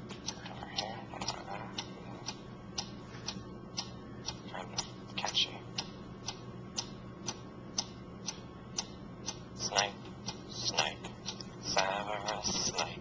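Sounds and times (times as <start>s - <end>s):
clock-like ticking: 0.2s - 13.0s.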